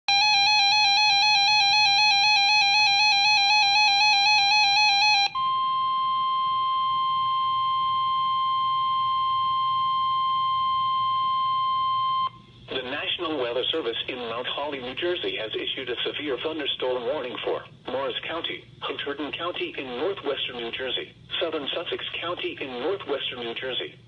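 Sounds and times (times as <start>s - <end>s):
steady alarm tone: 0.1s - 12.4s
two-pitch warble alarm: 0.1s - 12.4s.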